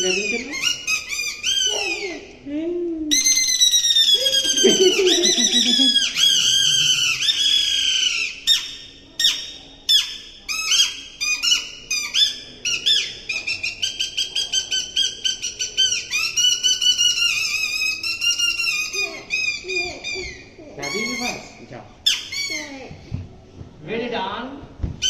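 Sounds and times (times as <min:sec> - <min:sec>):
squeaky reed whistle voice: 0:03.1 - 0:21.5.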